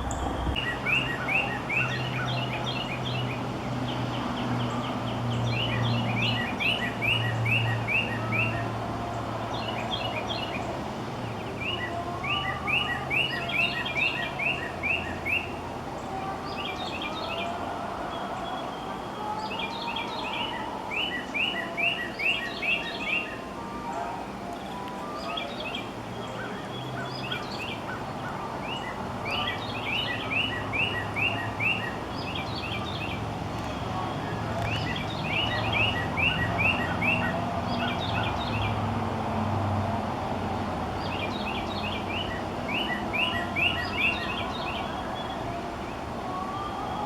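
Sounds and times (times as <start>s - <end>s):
cardinal whistled song: 0.0s - 38.9s, 41.0s - 47.0s
birds chipping: 0.0s - 47.0s.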